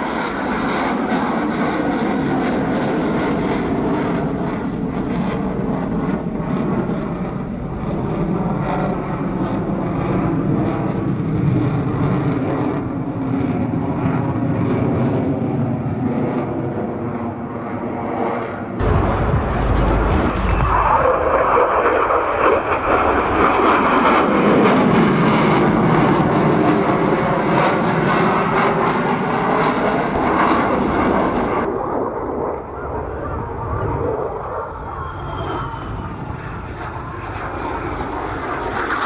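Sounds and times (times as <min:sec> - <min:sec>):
jet engine roar: 0:00.0 - 0:39.0
deep jet rumble: 0:18.8 - 0:23.4.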